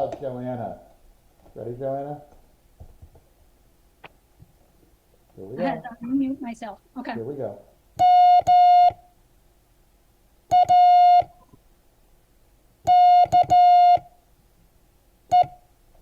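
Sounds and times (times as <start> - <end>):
morse code tone: 8.0 - 9.0, 10.5 - 11.4, 12.9 - 14.0, 15.3 - 15.6.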